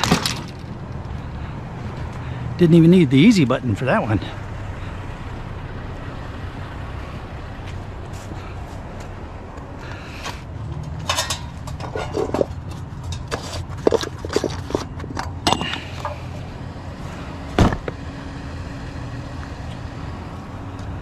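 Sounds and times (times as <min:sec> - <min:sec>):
scrap metal clinking and clanking: 0:00.0 - 0:00.8, 0:10.7 - 0:16.5
heavy thump: 0:17.5 - 0:18.0.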